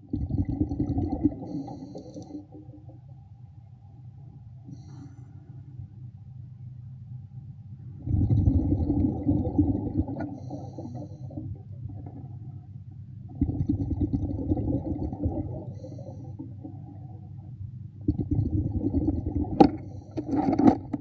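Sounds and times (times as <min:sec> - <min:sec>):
underwater air bubbles rumbling: 0:00.0 - 0:03.0, 0:08.0 - 0:21.0.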